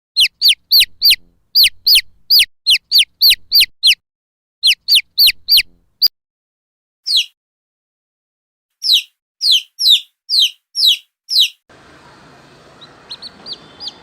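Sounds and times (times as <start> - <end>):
chick peeping: 0.2 - 4.0, 4.6 - 6.1, 8.9 - 14.0.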